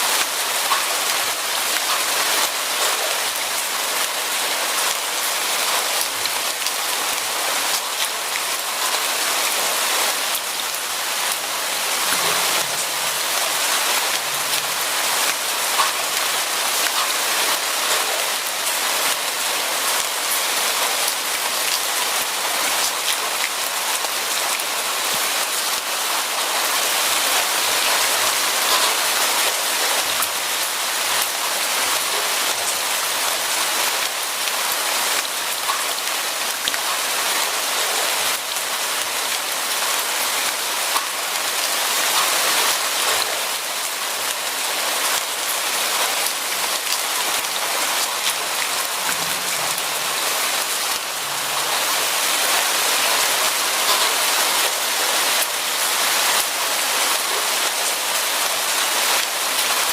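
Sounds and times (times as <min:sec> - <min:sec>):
steady rain falling: 0:00.0 - 0:59.9
raindrops ticking: 0:14.1 - 0:17.1.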